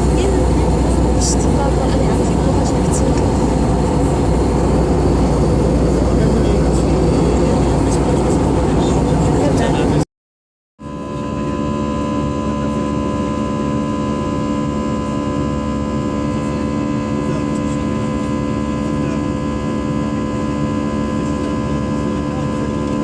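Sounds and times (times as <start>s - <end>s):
airliner engine rumble: 0.0s - 10.0s, 10.8s - 23.0s
hum of held tones: 10.8s - 23.0s.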